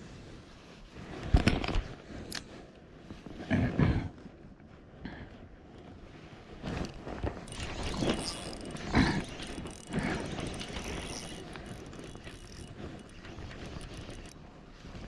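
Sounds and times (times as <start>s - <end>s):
mechanical ratcheting and clicking: 7.4s - 14.4s.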